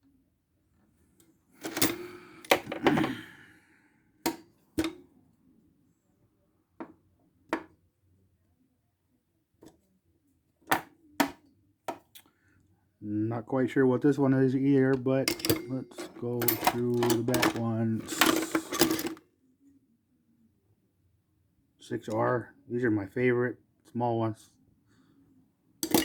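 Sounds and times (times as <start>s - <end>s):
metal pliers clanking in toolbox: 1.6s - 3.1s, 15.2s - 19.2s.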